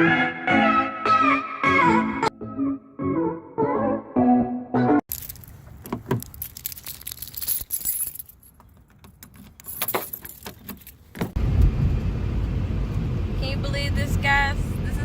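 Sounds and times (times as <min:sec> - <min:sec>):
keys jangling: 0:05.1 - 0:11.2
handling clicks and knocks: 0:05.1 - 0:11.4.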